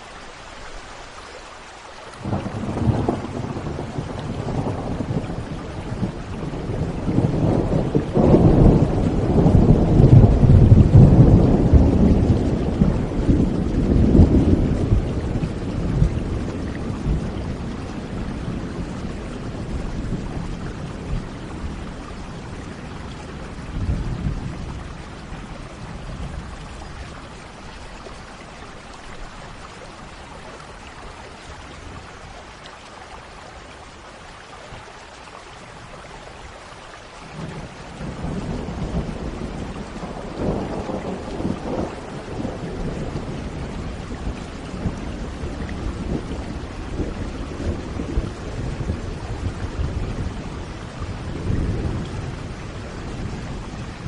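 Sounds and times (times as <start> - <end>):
steady rain: 0.0 - 54.0
rolling thunder: 2.2 - 27.5, 37.4 - 54.0.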